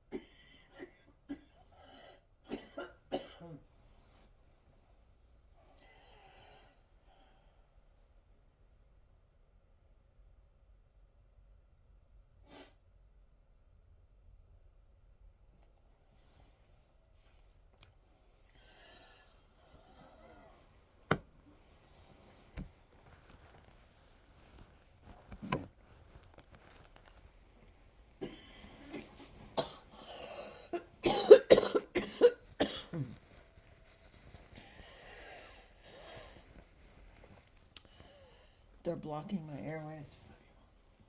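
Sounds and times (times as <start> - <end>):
woman coughing: 2.5 - 3.6, 28.2 - 33.2
wheezy breaths: 18.5 - 20.8, 28.2 - 31.0, 33.4 - 37.0, 37.8 - 38.7.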